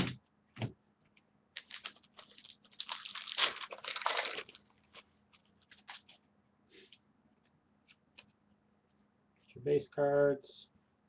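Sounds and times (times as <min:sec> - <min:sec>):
cards being handled: 0:01.6 - 0:06.2
foil wrapper crinkling: 0:01.6 - 0:06.2.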